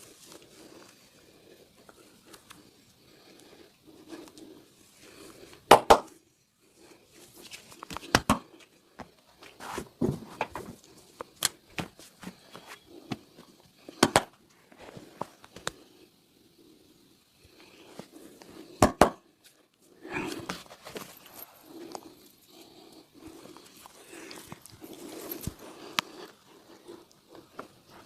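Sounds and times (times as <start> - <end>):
sharp massage slaps: 5.7 - 6.1, 8.0 - 8.5, 14.0 - 14.3.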